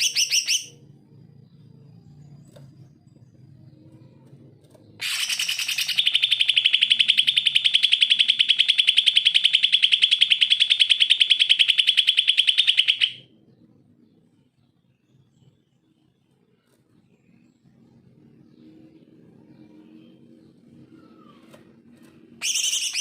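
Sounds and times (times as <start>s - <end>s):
bird singing a fast trill: 0.0s - 1.0s, 5.0s - 13.2s, 22.4s - 23.0s.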